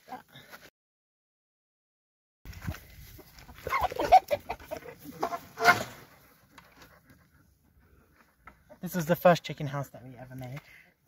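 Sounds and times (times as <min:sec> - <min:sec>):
chickens clucking: 0:03.2 - 0:08.8.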